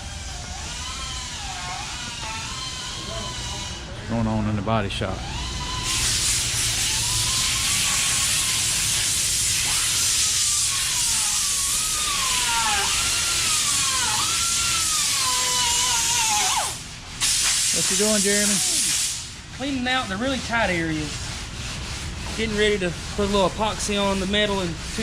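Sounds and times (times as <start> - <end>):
compressed air hissing: 5.8 - 19.5.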